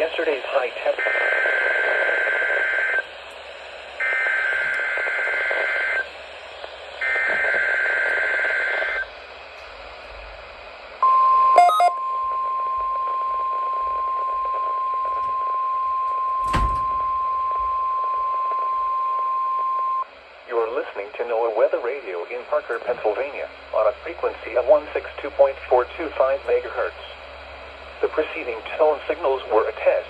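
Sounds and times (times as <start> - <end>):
radio hiss: 0.0 - 15.7, 20.0 - 30.0
steady warning alarm tone: 0.9 - 3.1, 4.0 - 6.1, 7.0 - 9.1, 11.0 - 20.0.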